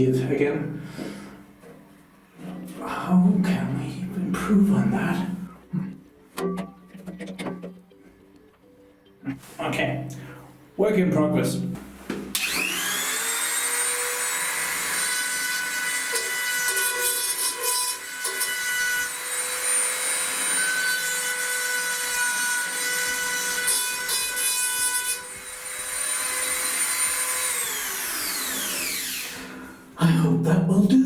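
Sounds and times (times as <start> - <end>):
rotary tool grinding metal: 12.4 - 29.8.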